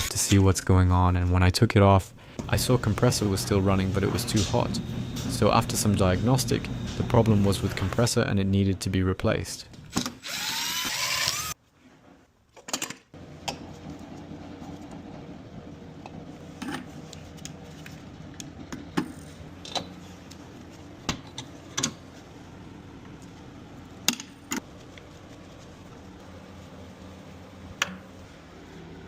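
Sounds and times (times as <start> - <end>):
power drill whine: 10.2 - 11.6.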